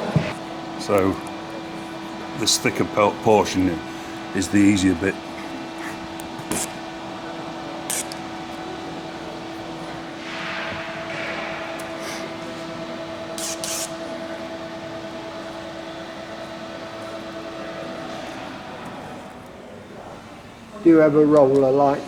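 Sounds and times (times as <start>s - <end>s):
higher machine tone: 0.0s - 6.2s
steady machine hum: 0.0s - 22.0s.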